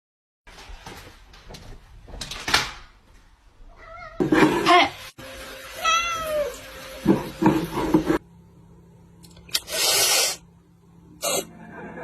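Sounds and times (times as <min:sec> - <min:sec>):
cat meowing: 0:03.7 - 0:04.3, 0:05.8 - 0:06.6
short burst of hissing: 0:09.6 - 0:10.4.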